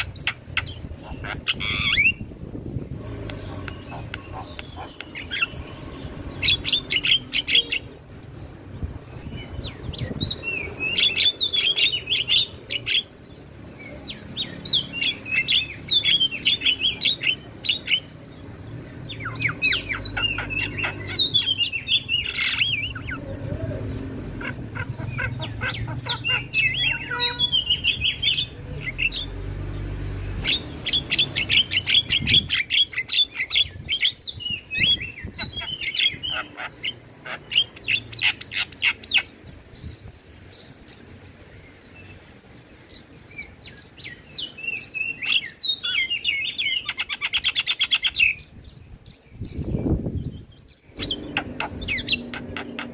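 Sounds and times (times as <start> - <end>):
myna bird singing: 0.0 - 52.9.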